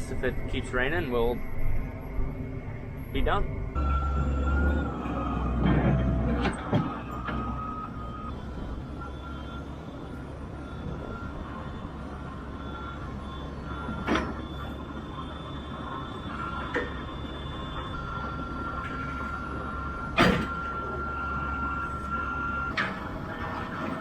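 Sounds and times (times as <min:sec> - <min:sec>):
tractor engine humming: 0:00.0 - 0:24.0.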